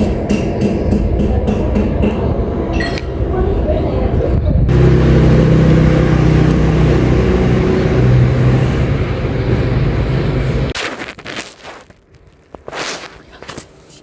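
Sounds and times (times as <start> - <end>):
loud low rumble: 3.2 - 10.7.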